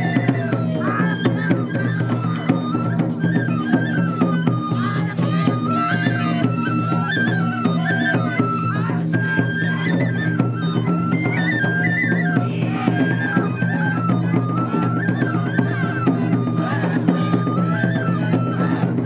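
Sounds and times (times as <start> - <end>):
bamboo flute melody: 0.0 - 19.0
percussion strikes: 0.0 - 19.0.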